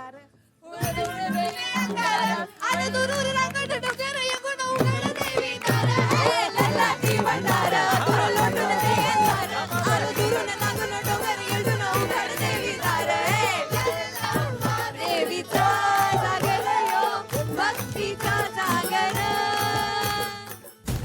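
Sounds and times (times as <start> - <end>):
person singing over a beat: 0.8 - 20.6.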